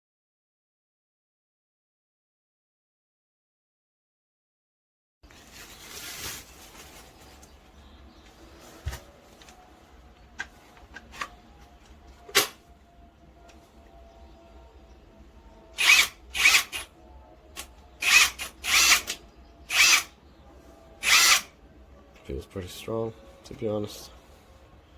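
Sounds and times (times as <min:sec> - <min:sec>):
impact wrench bursts: 0:15.8 - 0:16.9, 0:18.0 - 0:20.1, 0:21.0 - 0:21.5.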